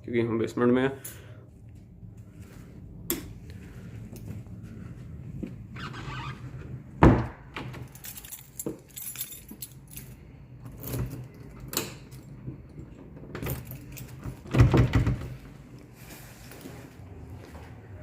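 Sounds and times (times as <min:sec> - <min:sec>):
keys jangling: 0:07.7 - 0:12.8, 0:13.4 - 0:14.5.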